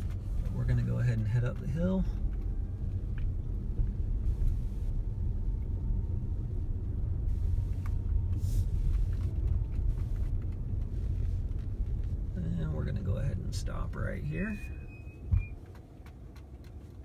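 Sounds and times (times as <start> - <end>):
tyres rumbling on snow: 0.0 - 17.0.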